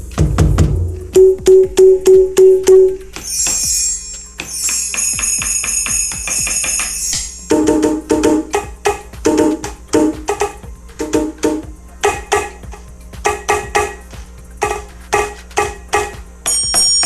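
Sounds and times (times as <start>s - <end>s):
pitched drum strikes: 0.0s - 17.0s
pitched percussion hits: 0.0s - 17.0s
tambourine jingling: 2.8s - 7.6s, 11.6s - 17.0s.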